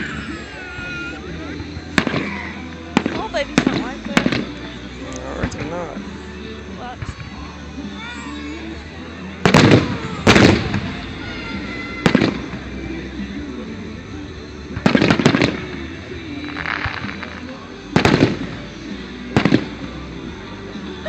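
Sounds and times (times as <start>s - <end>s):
fireworks banging: 1.9s - 2.4s, 3.0s - 5.8s, 9.4s - 11.4s, 12.0s - 12.8s, 14.7s - 20.0s.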